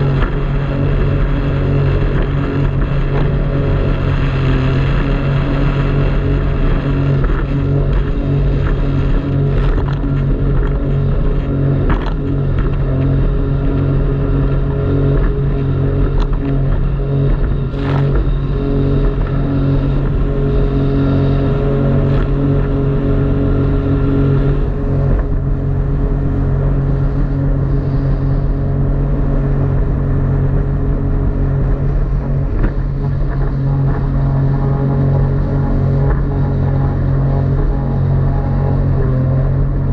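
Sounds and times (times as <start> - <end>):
jet ski engine running: 0.0 - 39.9.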